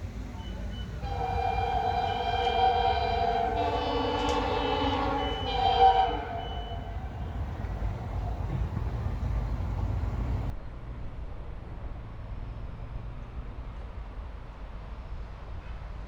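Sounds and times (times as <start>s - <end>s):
locomotive air horn chord: 0.0s - 10.5s
train rumbling past: 0.0s - 10.5s.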